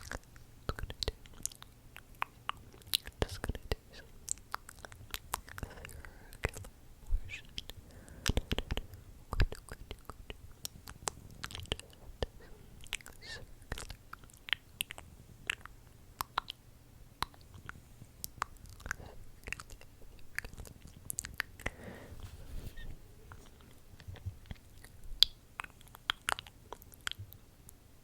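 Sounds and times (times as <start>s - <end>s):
wet mouth clicks and smacks: 7.4s - 16.6s, 17.2s - 21.7s, 24.0s - 27.4s.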